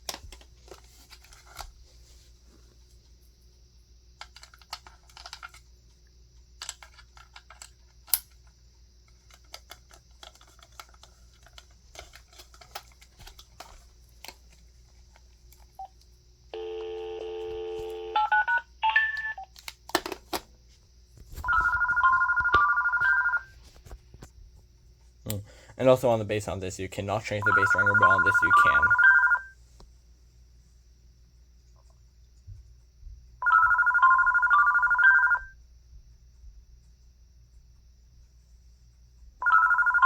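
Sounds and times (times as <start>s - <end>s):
phone electronic ringer: 16.6s - 19.4s, 21.4s - 23.5s, 27.4s - 29.5s, 33.4s - 35.6s, 39.4s - 40.0s.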